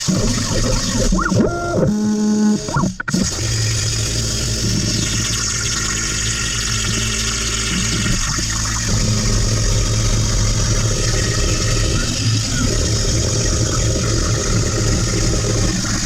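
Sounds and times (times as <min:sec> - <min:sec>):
low hum: 0:03.4 - 0:16.0.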